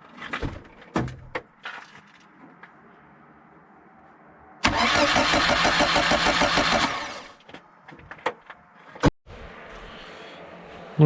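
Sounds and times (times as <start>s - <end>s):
car starter cranking: 4.6s - 7.3s.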